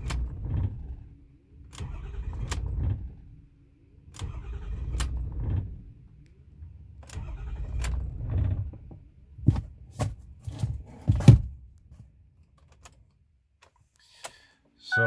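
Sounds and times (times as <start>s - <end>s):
diesel engine cranking: 0.0s - 3.4s, 4.1s - 6.0s, 6.7s - 9.0s.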